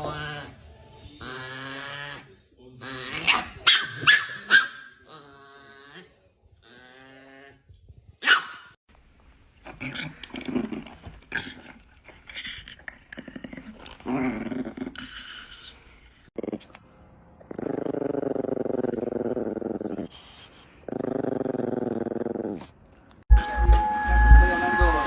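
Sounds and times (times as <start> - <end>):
small dog growling: 1.2 - 3.4, 5.0 - 7.8, 9.6 - 16.8, 17.4 - 23.2.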